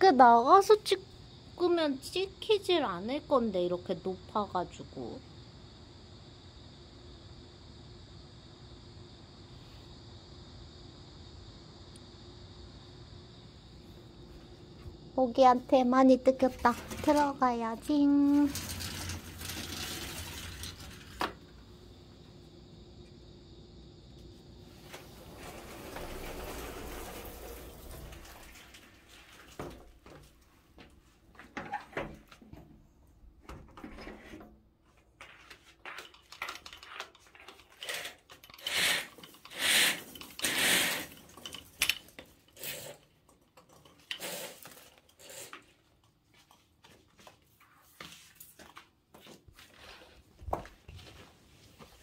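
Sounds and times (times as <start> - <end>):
scraping bursts: 37.8 - 41.4.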